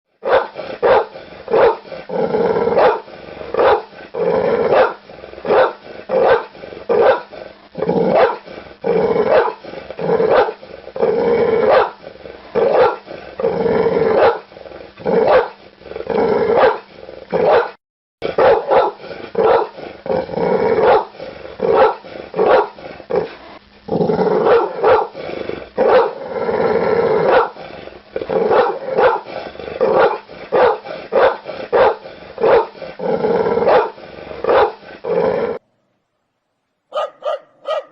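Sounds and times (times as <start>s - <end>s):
dog barking: 0.2s - 1.8s, 2.8s - 3.9s, 4.7s - 7.3s, 8.1s - 8.4s, 9.3s - 9.6s, 10.3s - 10.6s, 11.7s - 12.0s, 12.6s - 13.0s, 14.2s - 14.5s, 15.2s - 15.6s, 16.6s - 19.8s, 20.8s - 21.1s, 21.7s - 22.8s, 24.4s - 25.2s, 25.8s - 26.2s, 27.3s - 27.6s, 28.5s - 29.3s, 29.9s - 32.8s, 33.6s - 34.8s, 36.9s - 37.9s
dog growling: 0.2s - 35.6s.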